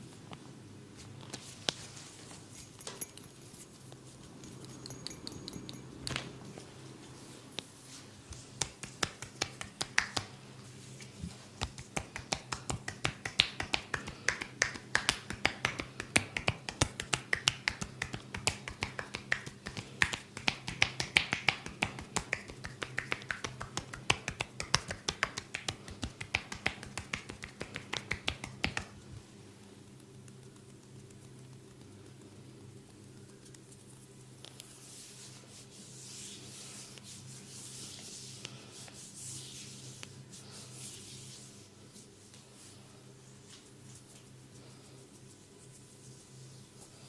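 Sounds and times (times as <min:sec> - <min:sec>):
hands clapping in percussive massage: 0:08.3 - 0:10.4, 0:11.6 - 0:29.0.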